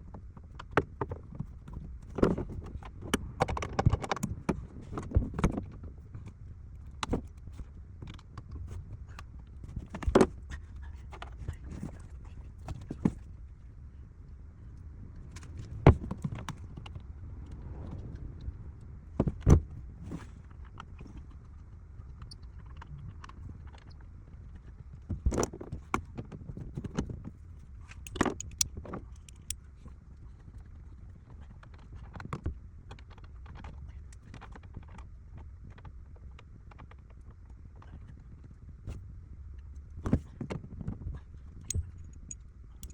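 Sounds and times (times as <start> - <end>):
low steady hum: 0.0 - 42.9
tools clicking and knocking: 28.1 - 29.6, 41.7 - 42.9.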